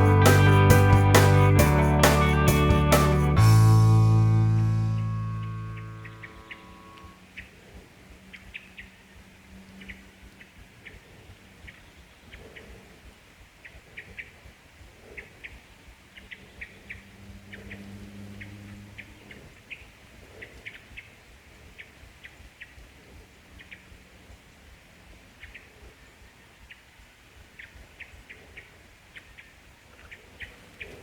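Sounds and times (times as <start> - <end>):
faint low hum: 0.0 - 12.1
small birds chirping: 5.0 - 13.0, 15.0 - 21.2.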